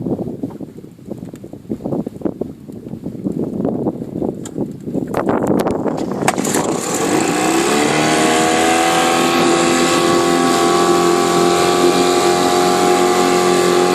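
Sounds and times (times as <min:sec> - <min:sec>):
outboard motor running: 0:05.0 - 0:13.9.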